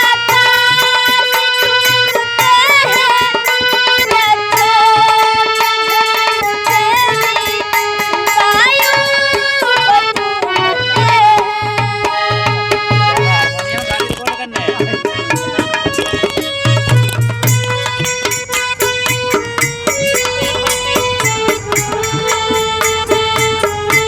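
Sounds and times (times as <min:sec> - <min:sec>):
sliding folk melody: 0:00.0 - 0:24.0
hand drum strokes: 0:12.7 - 0:24.0.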